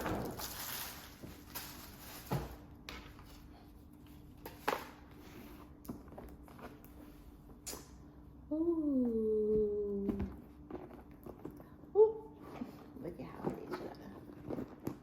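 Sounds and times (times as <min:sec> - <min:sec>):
packaging rustling: 0:00.0 - 0:02.7.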